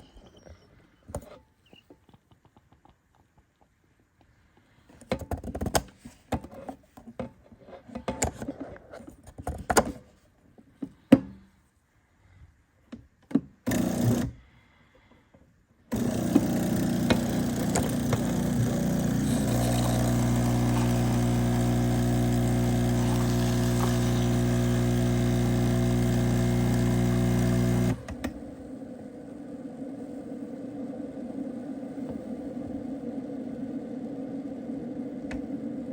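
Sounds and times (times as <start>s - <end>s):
machine hum: 15.9s - 35.9s.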